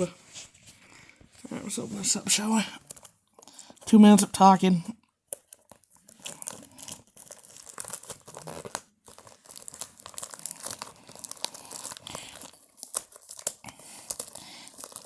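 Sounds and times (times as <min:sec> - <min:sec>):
packaging crinkling and tearing: 0:02.0 - 0:04.2, 0:05.1 - 0:15.0.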